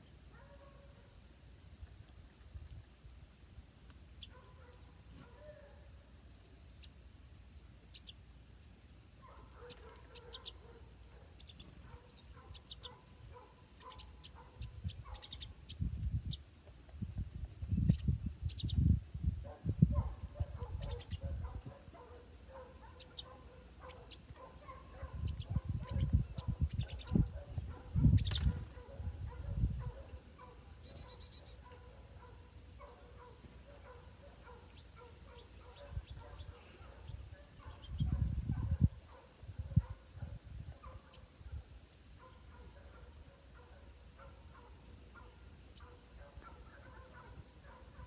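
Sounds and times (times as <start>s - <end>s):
small birds chirping: 0.0s - 41.5s
small bird trilling: 13.8s - 16.4s, 28.0s - 28.5s, 30.8s - 31.6s.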